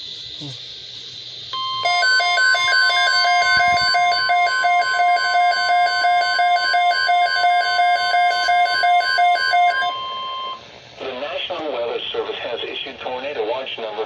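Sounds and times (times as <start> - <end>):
rapid two-pitch beeping alarm: 1.5 - 10.6
steady piercing alarm tone: 1.5 - 10.7.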